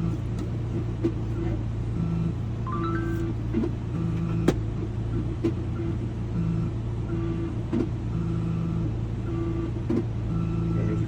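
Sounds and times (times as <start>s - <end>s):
vehicle engine idling: 0.0s - 11.0s.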